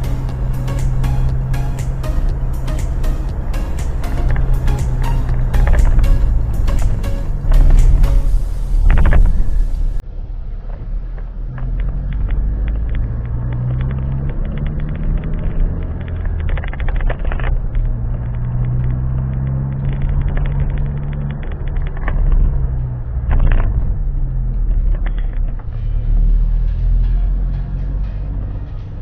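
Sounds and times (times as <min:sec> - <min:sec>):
vehicle engine and road rumble: 0:00.0 - 0:29.0.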